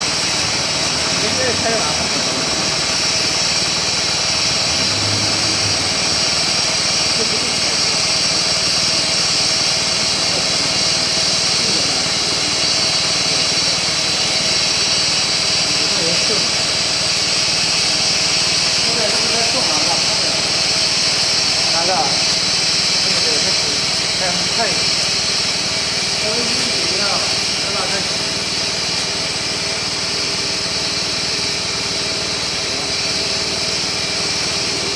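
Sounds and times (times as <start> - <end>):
steady hum: 0.0 - 21.9
machine mechanical drone: 0.0 - 24.2
high hiss: 0.0 - 28.6.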